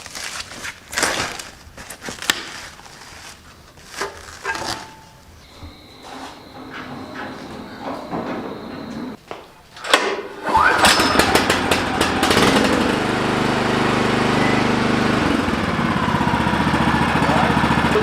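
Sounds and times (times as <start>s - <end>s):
small gasoline engine running: 10.4s - 18.0s.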